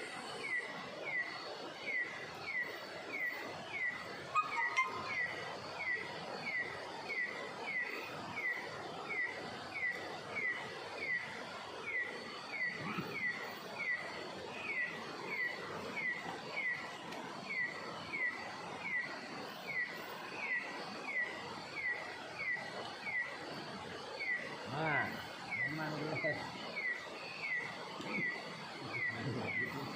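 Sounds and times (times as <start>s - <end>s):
faint high-pitched drone: 0.0s - 29.9s.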